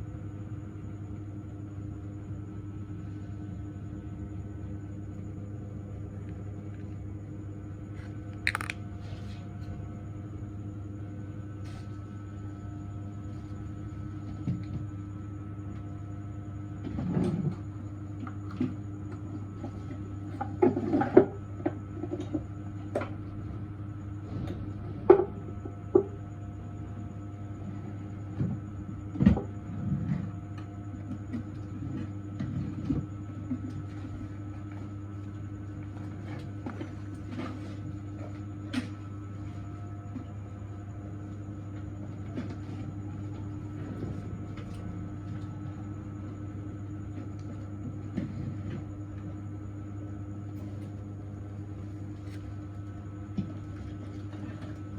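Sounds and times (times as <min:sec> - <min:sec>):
machine hum: 0:02.0 - 0:15.7.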